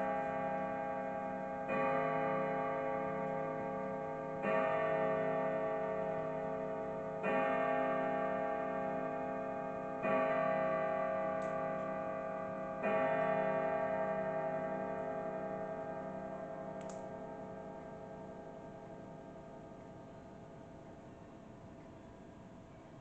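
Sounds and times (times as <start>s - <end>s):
grandfather clock striking: 0.0s - 20.8s.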